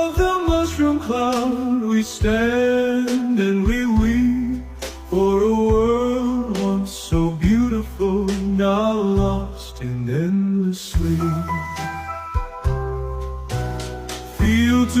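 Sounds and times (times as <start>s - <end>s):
man singing long notes: 0.0s - 12.0s, 14.4s - 15.0s
bass line: 0.0s - 15.0s
drum hits: 12.4s - 15.0s.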